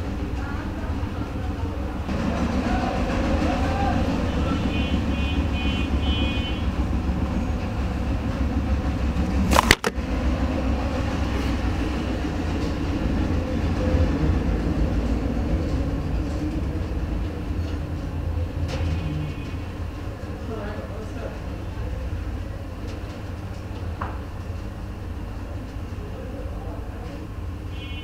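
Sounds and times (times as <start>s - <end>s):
sharp click: 9.5s - 10.0s.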